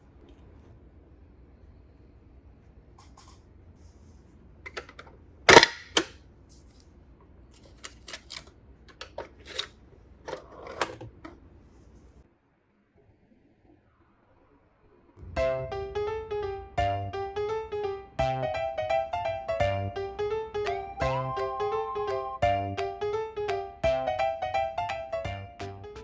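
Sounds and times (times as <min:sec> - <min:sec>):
plastic toy parts clicking: 0:04.7 - 0:06.2, 0:07.6 - 0:09.7.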